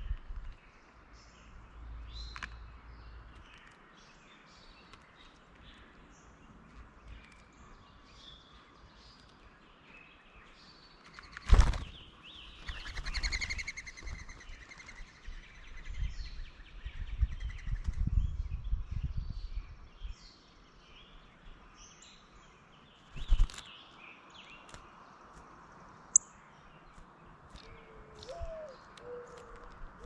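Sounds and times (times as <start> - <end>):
birds chipping and calling: 0.0 - 18.7, 19.8 - 30.0
rapid rattling bird call: 11.1 - 15.2.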